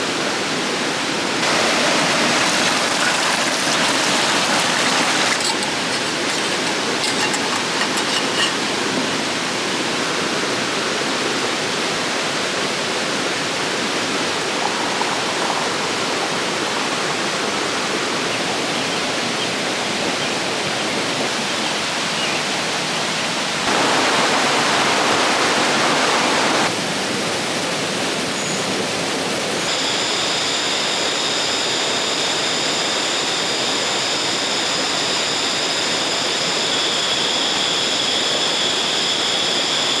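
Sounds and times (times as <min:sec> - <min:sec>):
river water rushing: 0:01.1 - 0:10.6, 0:11.4 - 0:18.6, 0:23.6 - 0:26.8
high-pitched ringing: 0:03.8 - 0:08.9.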